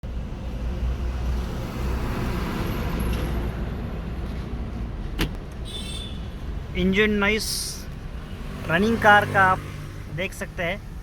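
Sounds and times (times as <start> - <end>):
tyre and traffic noise: 0.0 - 11.0.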